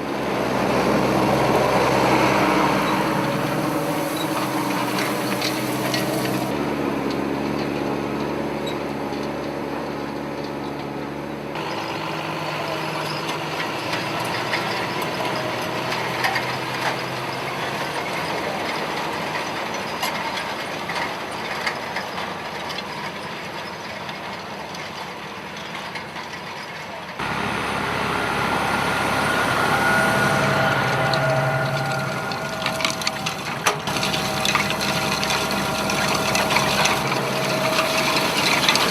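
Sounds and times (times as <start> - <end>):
farm machinery engine clattering: 0.0 - 38.9.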